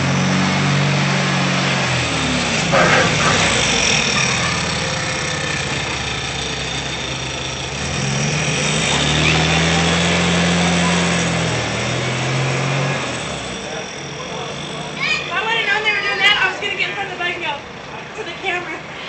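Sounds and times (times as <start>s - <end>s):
car engine running: 1.6s - 15.2s.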